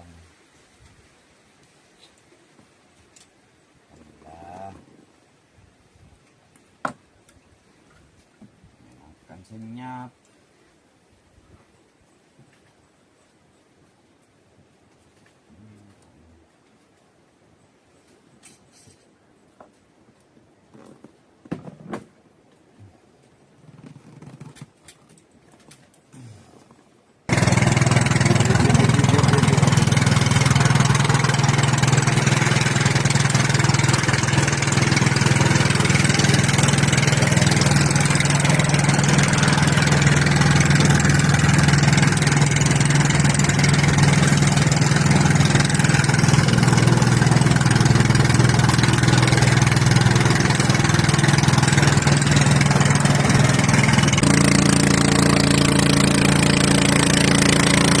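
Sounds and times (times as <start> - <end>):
engine running steadily: 27.3 - 58.0.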